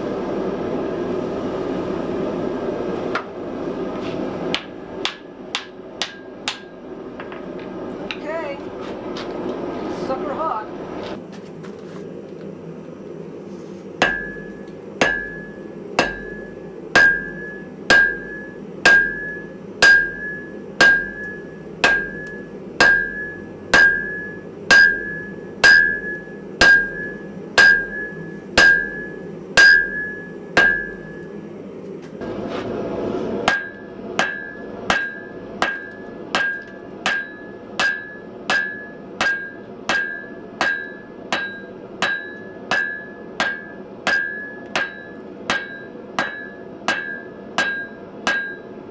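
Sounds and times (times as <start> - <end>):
hammer striking metal on anvil: 4.5 - 7.5, 14.0 - 31.3, 33.5 - 48.9.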